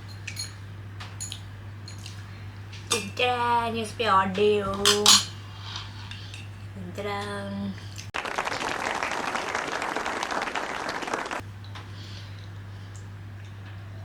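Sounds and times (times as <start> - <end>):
applause: 8.2 - 11.4.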